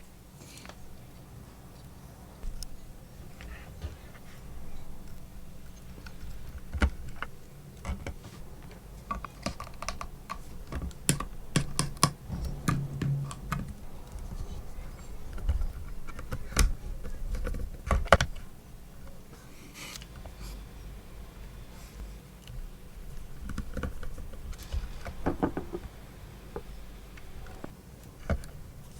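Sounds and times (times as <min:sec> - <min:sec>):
sharp knocks: 0:11.1 - 0:16.8, 0:24.8 - 0:26.0.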